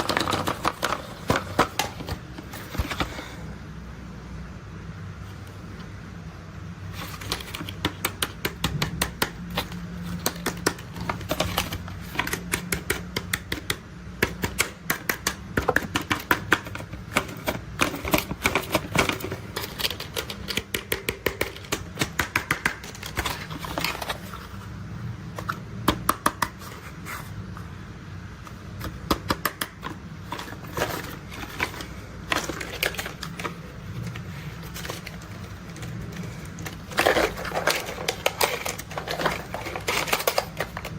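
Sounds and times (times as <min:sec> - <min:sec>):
plastic toy parts clicking: 0:00.0 - 0:03.1, 0:07.0 - 0:24.3, 0:28.8 - 0:40.9.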